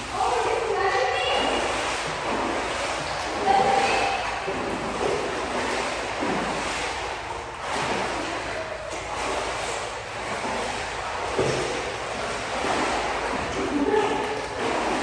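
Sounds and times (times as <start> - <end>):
splashing water echoing: 0.0 - 15.0
voices: 0.1 - 1.8, 3.3 - 4.4.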